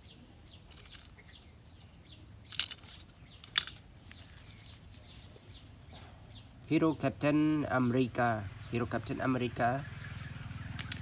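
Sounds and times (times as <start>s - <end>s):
faint birds chirping: 0.0s - 11.0s.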